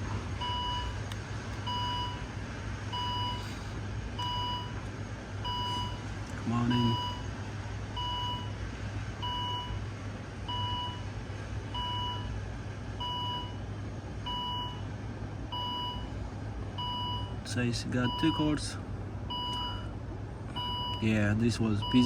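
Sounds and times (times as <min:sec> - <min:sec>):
steady low hum: 0:00.0 - 0:22.0
car warning chime beeping: 0:00.4 - 0:01.0, 0:01.6 - 0:02.3, 0:02.9 - 0:03.4, 0:04.2 - 0:04.8, 0:05.4 - 0:07.3, 0:08.0 - 0:08.6, 0:09.2 - 0:09.8, 0:10.5 - 0:11.0, 0:11.7 - 0:12.3, 0:14.3 - 0:14.8, 0:15.5 - 0:16.1, 0:16.8 - 0:17.4, 0:18.0 - 0:18.6, 0:19.3 - 0:19.9, 0:20.6 - 0:21.2, 0:21.8 - 0:22.0.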